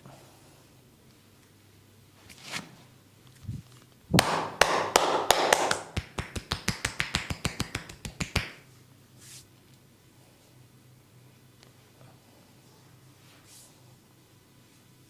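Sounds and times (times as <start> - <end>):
hands slapping skin: 4.1 - 8.6.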